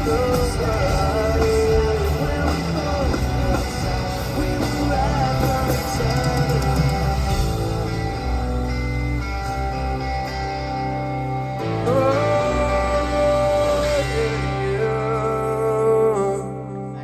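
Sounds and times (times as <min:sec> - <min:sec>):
pop-punk rock band playing: 0:00.0 - 0:16.4.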